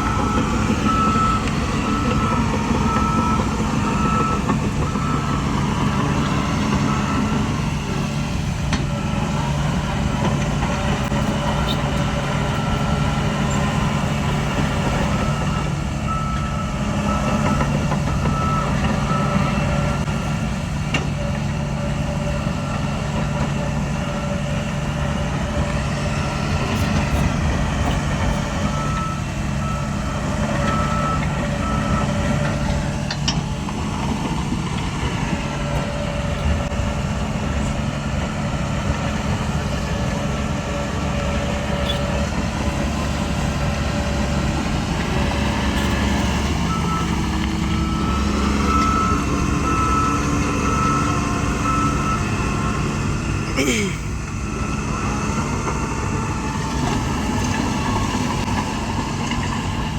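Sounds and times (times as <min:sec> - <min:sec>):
reversing alarm beeping: 0:00.0 - 0:08.0, 0:11.0 - 0:20.1, 0:22.3 - 0:33.2, 0:43.0 - 0:53.3, 0:54.2 - 0:58.6
heavy diesel machinery running: 0:00.0 - 0:59.9.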